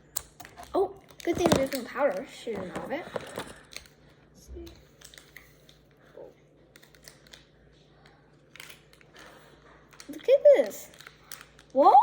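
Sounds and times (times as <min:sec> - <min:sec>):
plastic packet and bottle clicks: 0:00.2 - 0:03.9, 0:10.9 - 0:11.8.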